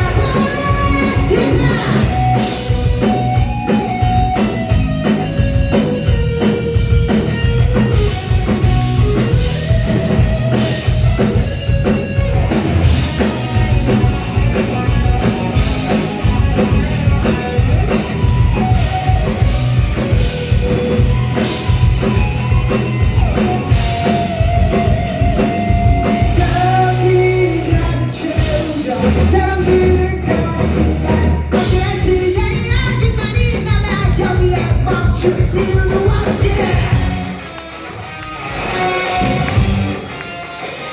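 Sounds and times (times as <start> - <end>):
person singing: 0.0 - 2.6, 26.2 - 37.4
bass guitar: 0.0 - 40.9
drum kit: 0.0 - 40.9
electric guitar: 0.0 - 40.9.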